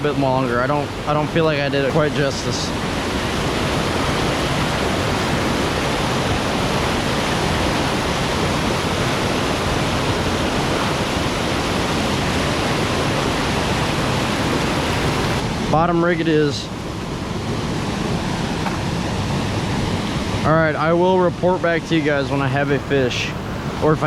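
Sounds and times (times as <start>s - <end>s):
water rushing through spillway: 0.0s - 24.0s.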